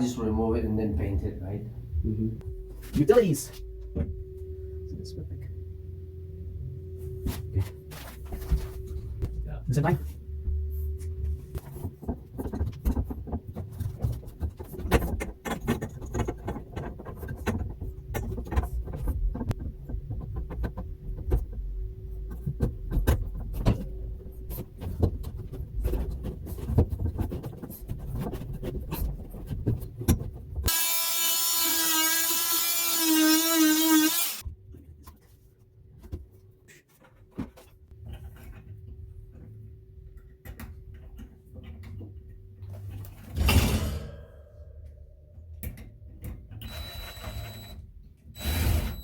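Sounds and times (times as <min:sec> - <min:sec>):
power drill motor whining: 0:30.7 - 0:34.4, 0:46.6 - 0:47.8.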